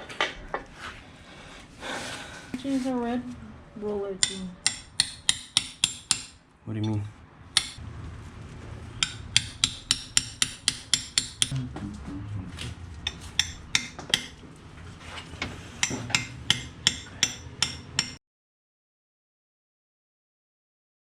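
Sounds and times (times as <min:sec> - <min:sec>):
hammer blows: 0:08.8 - 0:14.4.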